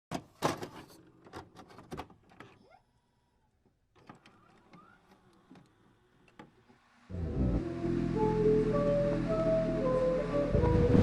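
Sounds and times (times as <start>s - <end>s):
faint clicks and knocks: 3.6s - 6.8s.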